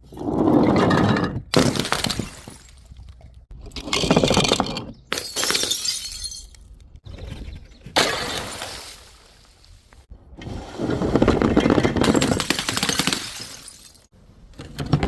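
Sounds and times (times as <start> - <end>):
glass bottles smashing: 1.6 - 2.9, 4.4 - 6.7, 12.0 - 14.1
glass shards tinkling: 5.2 - 6.6.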